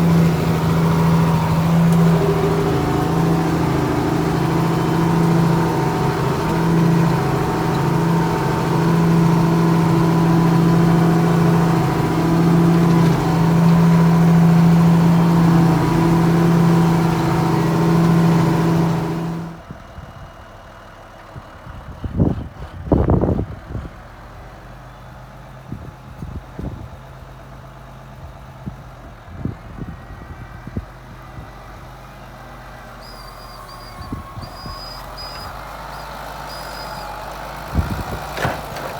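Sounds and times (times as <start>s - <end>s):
quiet engine hum: 0.0s - 20.3s
diesel tractor engine drone: 0.0s - 38.9s.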